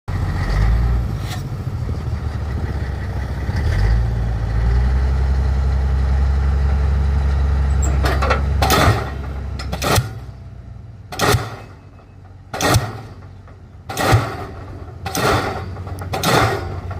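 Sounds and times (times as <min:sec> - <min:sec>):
diesel engine rumbling: 0:00.1 - 0:16.9
pile hammer banging: 0:08.0 - 0:10.4, 0:11.1 - 0:16.9.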